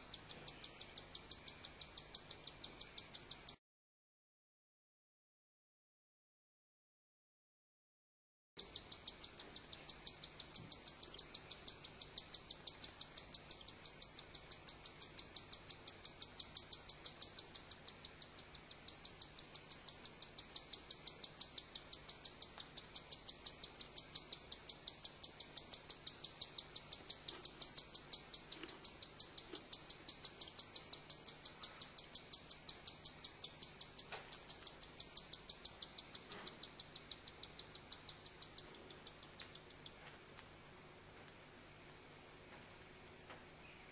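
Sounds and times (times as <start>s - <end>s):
bird chicks cheeping: 0.0s - 3.6s, 8.6s - 40.0s.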